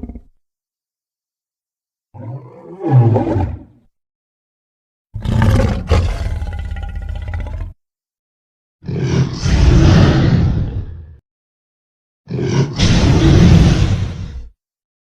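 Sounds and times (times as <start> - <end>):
dragon roar: 5.2 - 7.8, 8.8 - 11.2, 12.3 - 14.5.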